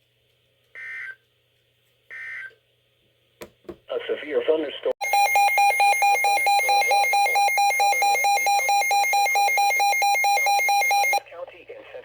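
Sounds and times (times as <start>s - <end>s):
warbling electronic alarm tone: 5.0s - 11.2s.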